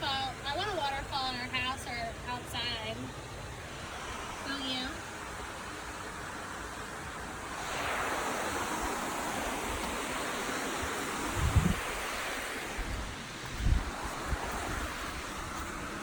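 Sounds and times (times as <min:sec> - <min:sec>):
waterfall rushing: 0:03.5 - 0:16.0
wind buffeting microphone: 0:07.1 - 0:16.0.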